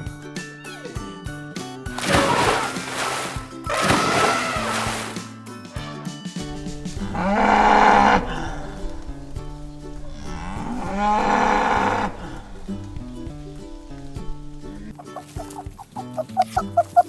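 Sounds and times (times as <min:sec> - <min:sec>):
background music: 0:00.0 - 0:17.0
cow mooing: 0:03.7 - 0:05.2, 0:06.5 - 0:14.9.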